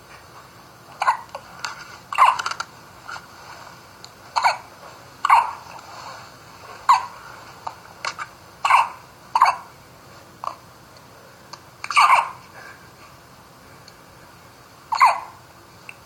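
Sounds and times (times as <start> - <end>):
baby hiccuping: 4.4 - 5.6, 8.6 - 9.7, 11.9 - 12.4, 14.9 - 15.3.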